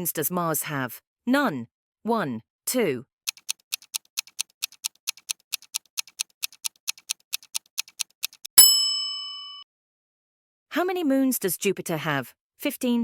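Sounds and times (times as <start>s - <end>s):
clock ticking quickly: 3.3s - 8.6s.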